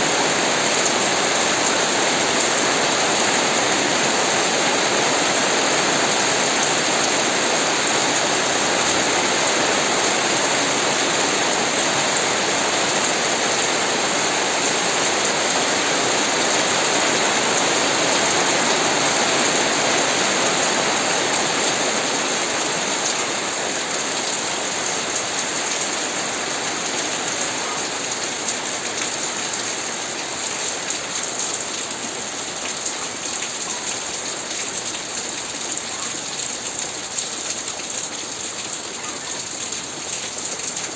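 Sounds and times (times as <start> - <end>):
steady rain falling: 0.0 - 40.9.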